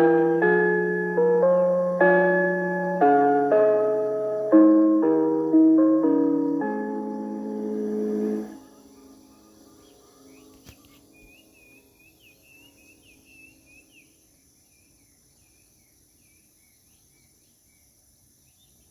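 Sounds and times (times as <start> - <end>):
small bird chirping: 6.1 - 18.9.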